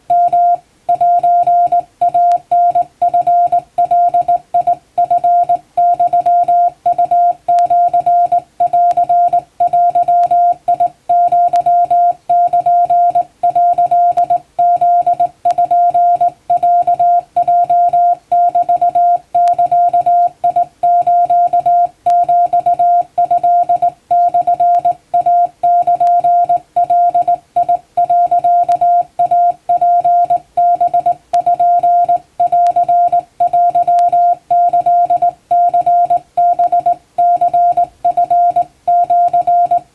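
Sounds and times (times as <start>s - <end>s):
morse code beeps: 0.1s - 39.9s.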